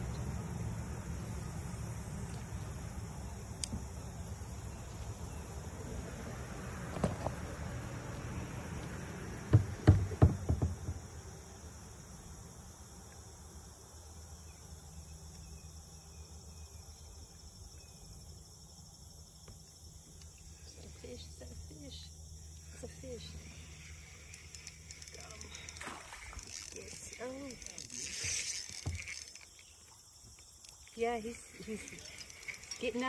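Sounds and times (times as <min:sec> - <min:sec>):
crickets and insects chirring: 0:00.0 - 0:33.0
knocks: 0:09.5 - 0:11.0.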